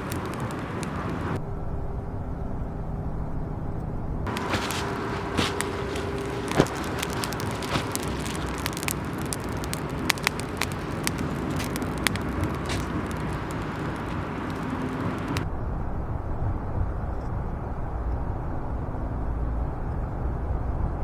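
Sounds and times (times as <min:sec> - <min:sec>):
wood fire crackling: 0:00.0 - 0:01.4, 0:04.3 - 0:15.5.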